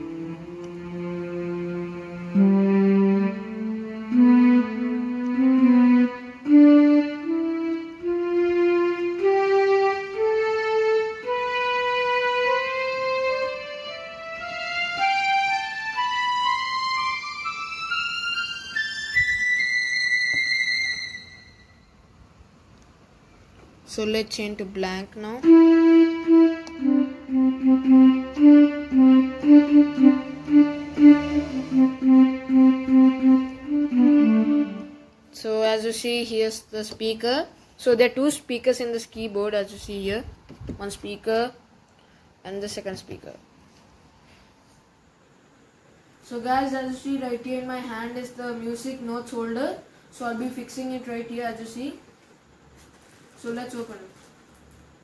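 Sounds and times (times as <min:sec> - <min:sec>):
digital keyboard notes: 0:00.0 - 0:21.8, 0:25.3 - 0:35.2.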